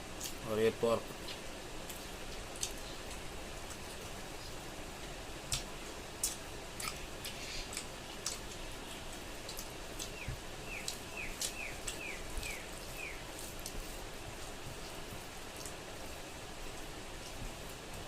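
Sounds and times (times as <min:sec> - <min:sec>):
steady hiss: 0:00.0 - 0:18.0
wet mouth chewing clicks: 0:01.2 - 0:04.0, 0:05.5 - 0:08.6, 0:09.4 - 0:12.6.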